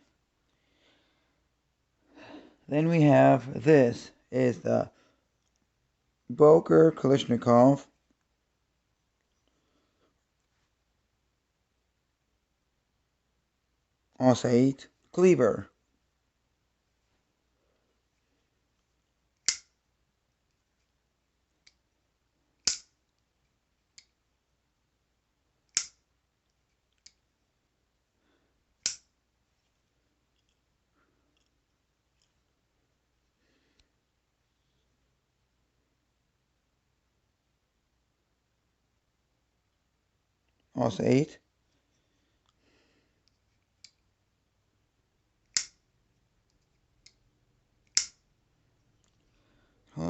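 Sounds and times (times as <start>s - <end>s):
spring blade snapping open: 22.6s - 22.9s, 45.5s - 45.8s, 47.9s - 48.2s
knife clicking: 25.7s - 26.0s, 28.8s - 29.0s, 45.5s - 45.8s, 47.8s - 48.2s.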